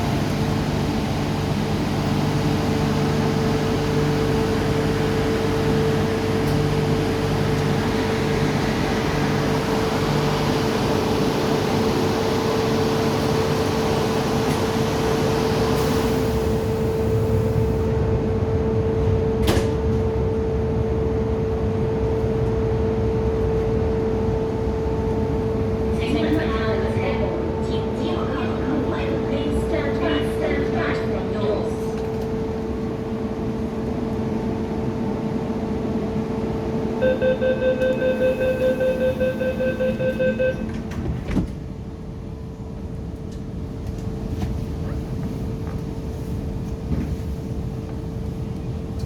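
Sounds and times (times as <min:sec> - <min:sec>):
train carriage interior hum: 0:00.0 - 0:49.0.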